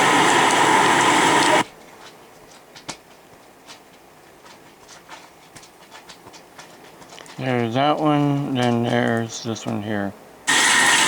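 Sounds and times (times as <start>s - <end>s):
heavy rain and wind: 0.0s - 1.9s, 6.6s - 11.0s
faint ticks and clicks: 1.4s - 9.9s.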